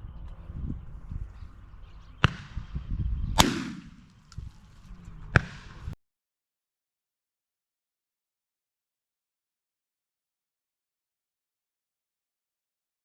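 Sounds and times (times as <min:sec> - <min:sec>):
shotgun shots with echo: 0:02.2 - 0:02.7, 0:03.4 - 0:04.2, 0:05.4 - 0:06.0.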